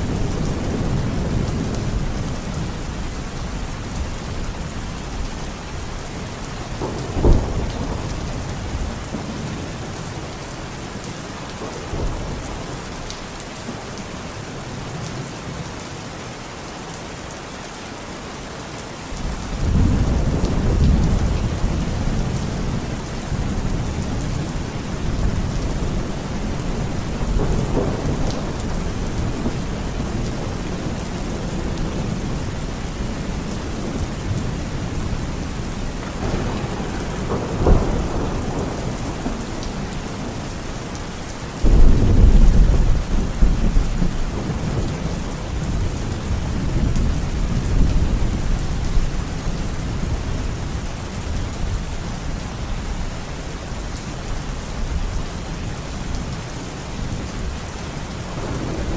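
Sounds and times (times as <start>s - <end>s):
steady rain: 0.0s - 58.9s
low thunder rumble: 6.8s - 9.8s, 19.6s - 40.4s, 41.6s - 51.8s.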